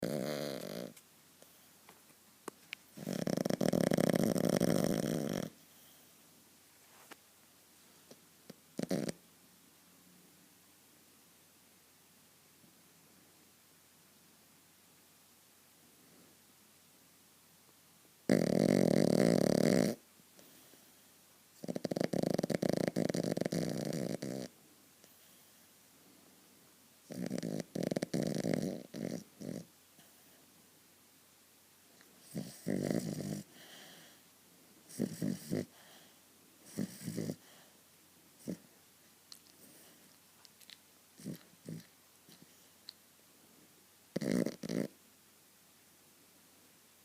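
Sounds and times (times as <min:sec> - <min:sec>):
dog snoring: 0:00.0 - 0:01.0, 0:02.9 - 0:06.0, 0:08.5 - 0:09.2, 0:18.3 - 0:20.8, 0:21.6 - 0:24.6, 0:27.0 - 0:30.1, 0:32.2 - 0:34.2, 0:34.9 - 0:37.7, 0:38.4 - 0:38.7, 0:41.2 - 0:42.6, 0:44.1 - 0:45.0.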